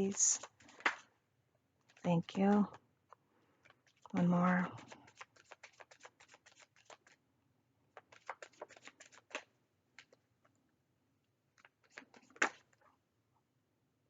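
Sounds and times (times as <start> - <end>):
cards being shuffled: 0.0 - 1.1, 1.8 - 7.2, 7.9 - 10.2, 11.6 - 12.8.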